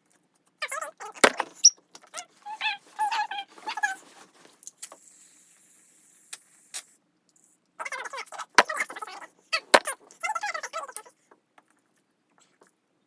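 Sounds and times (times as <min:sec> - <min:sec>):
squeaky high-pitched chirps: 0:01.2 - 0:01.8.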